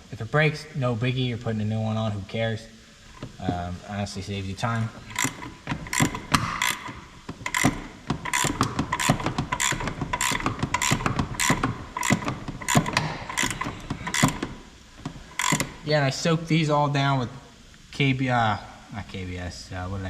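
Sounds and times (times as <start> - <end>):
ratcheting wrench clicking: 5.0 - 14.6, 15.2 - 15.8.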